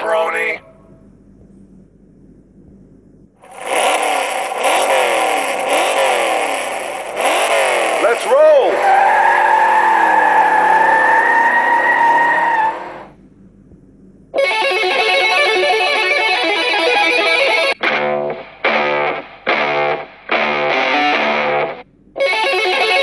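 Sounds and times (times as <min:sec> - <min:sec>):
distorted electric guitar riff: 0:03.4 - 0:08.8, 0:14.4 - 0:23.0
car engine sound effect: 0:03.4 - 0:23.0.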